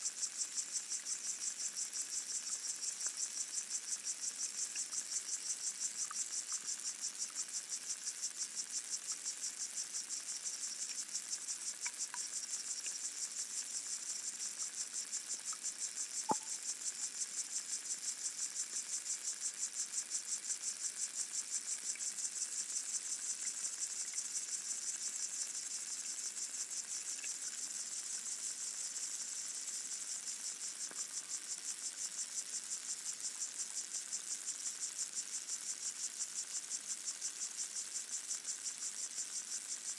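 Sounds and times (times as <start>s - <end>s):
faint ticks: 0.1s - 39.9s
sharp click: 16.3s - 16.5s.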